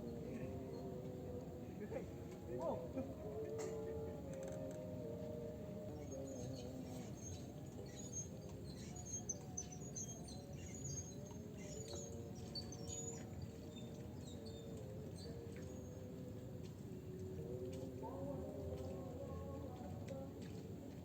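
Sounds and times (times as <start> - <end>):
small birds chirping: 5.9 - 16.2.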